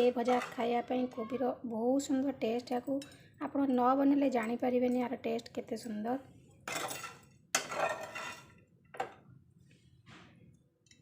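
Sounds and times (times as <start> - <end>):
spoon scraping a plate: 6.7 - 8.6.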